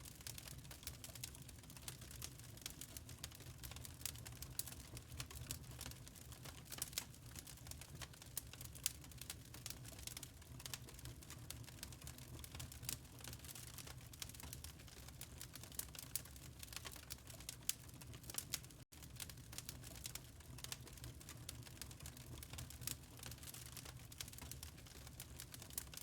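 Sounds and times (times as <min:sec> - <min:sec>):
wood fire crackling: 0:00.0 - 0:26.0
low rumble of flames: 0:00.1 - 0:26.0.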